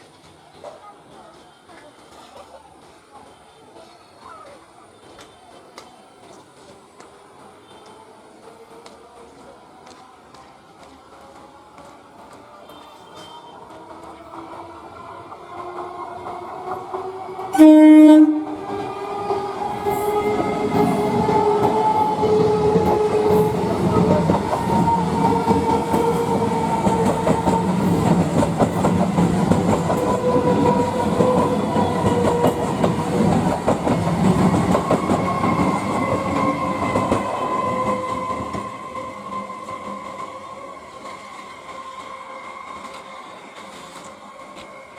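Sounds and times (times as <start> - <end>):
electric train passing: 5.7 - 44.9
train horn blast: 17.5 - 28.3.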